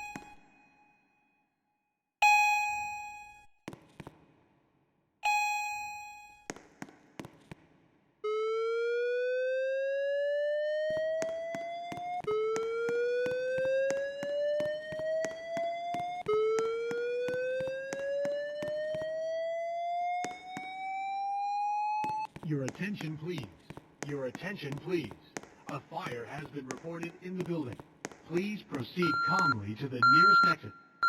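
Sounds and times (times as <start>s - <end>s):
alarm chime: 0.0s - 1.0s, 2.2s - 3.5s, 5.2s - 6.5s, 29.0s - 31.0s
slow-whoop alarm tone: 8.2s - 22.3s.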